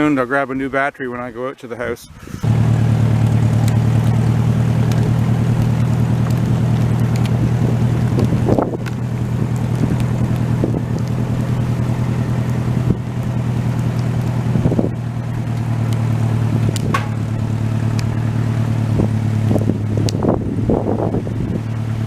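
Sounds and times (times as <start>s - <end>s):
engine running: 2.3s - 22.0s
knocks and rattles: 16.7s - 17.3s.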